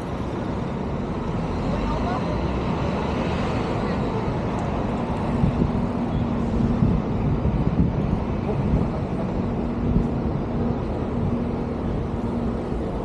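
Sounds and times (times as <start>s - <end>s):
city traffic: 0.0s - 13.0s
wind buffeting microphone: 4.2s - 13.0s.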